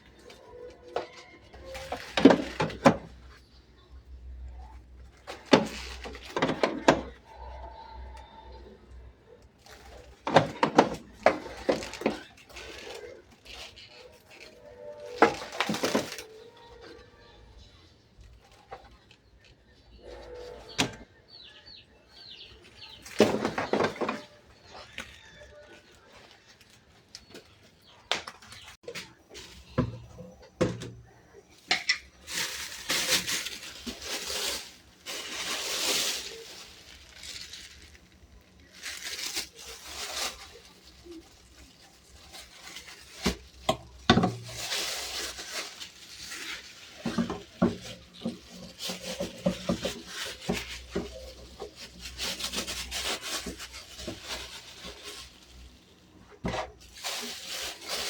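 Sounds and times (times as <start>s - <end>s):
household items clattering: 0.0s - 3.5s, 4.5s - 7.4s, 9.5s - 17.0s, 22.9s - 25.3s, 28.4s - 58.0s.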